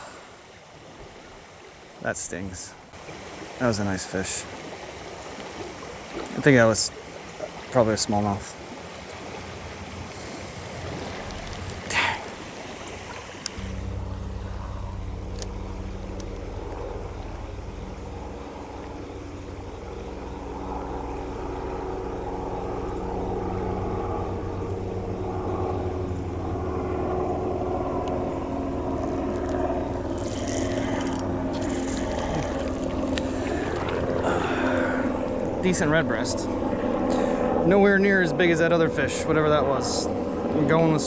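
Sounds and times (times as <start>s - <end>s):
engine drone: 8.5s - 41.0s
sharp noisy sounds: 30.0s - 34.5s.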